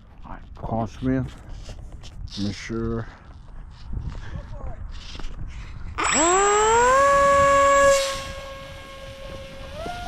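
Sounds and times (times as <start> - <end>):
jet turbine whine: 6.0 - 10.0.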